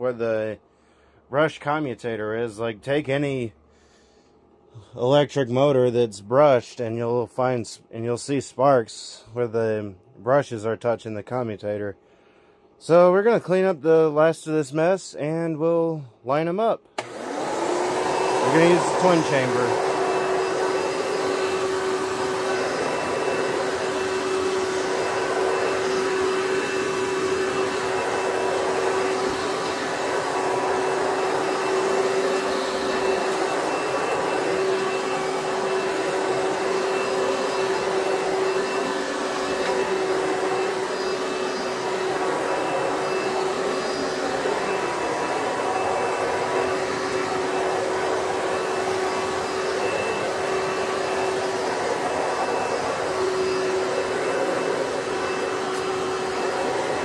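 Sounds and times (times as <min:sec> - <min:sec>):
vacuum cleaner motor whining: 0:17.0 - 0:57.0.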